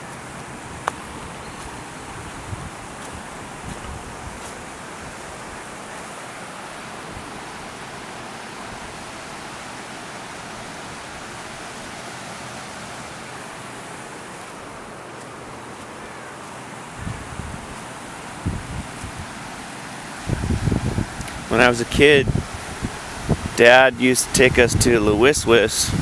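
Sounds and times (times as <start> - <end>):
wind buffeting microphone: 0.0 - 5.7, 16.9 - 19.5, 20.2 - 26.0
river water rushing: 0.0 - 26.0.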